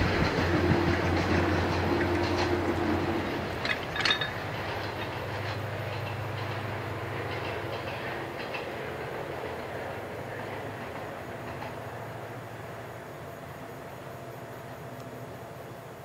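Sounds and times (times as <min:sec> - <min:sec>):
train passing on rails: 0:00.0 - 0:16.0
train wheel clicks: 0:00.1 - 0:12.2.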